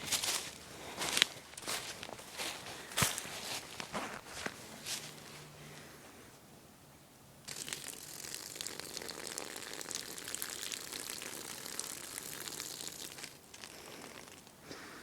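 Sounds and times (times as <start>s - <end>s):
urine stream splattering on ground: 9.9s - 13.7s.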